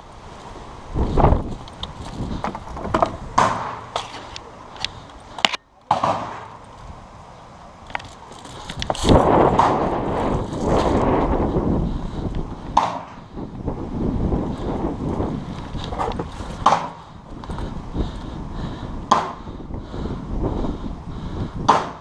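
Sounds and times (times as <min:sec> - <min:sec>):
rough rustling and scuffing: 0:00.0 - 0:18.3
sharp clicks and cracks: 0:01.5 - 0:06.8.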